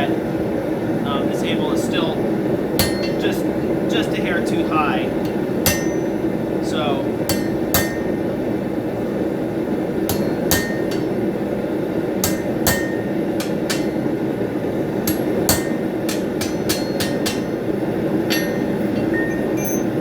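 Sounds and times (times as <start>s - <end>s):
hammer striking steel on anvil: 2.7s - 4.0s, 5.2s - 6.4s, 7.2s - 8.4s, 9.9s - 20.0s.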